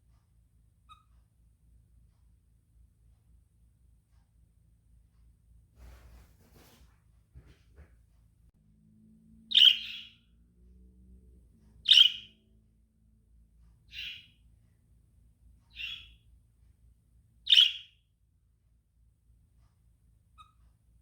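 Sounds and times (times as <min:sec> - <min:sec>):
lovebird chirping: 0:09.5 - 0:10.3, 0:11.8 - 0:12.4, 0:13.8 - 0:14.4, 0:15.7 - 0:16.3, 0:17.4 - 0:18.0.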